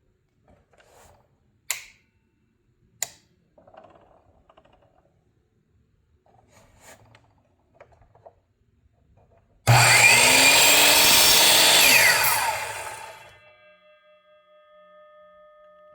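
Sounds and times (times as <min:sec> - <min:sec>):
miter saw motor whining: 0:09.7 - 0:13.4.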